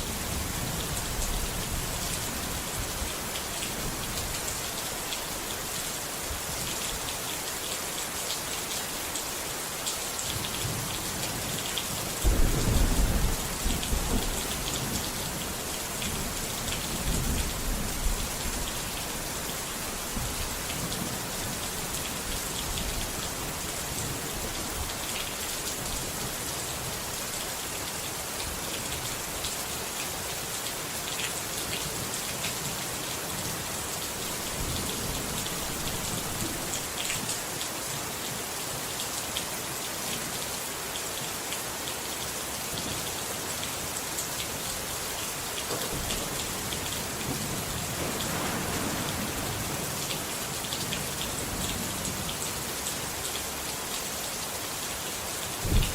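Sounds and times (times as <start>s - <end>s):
steady rain falling: 0.0s - 55.9s
thunder rumbling: 12.2s - 18.6s, 45.9s - 52.3s, 55.6s - 55.9s.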